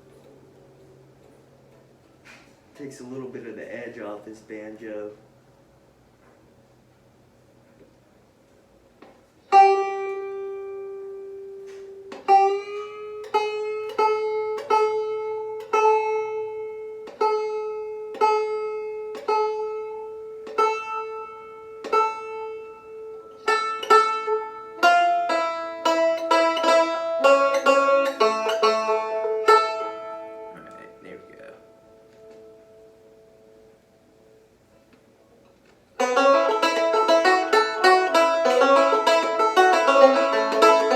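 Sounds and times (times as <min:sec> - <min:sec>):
banjo picking: 0:09.0 - 0:33.7, 0:35.9 - 0:40.9.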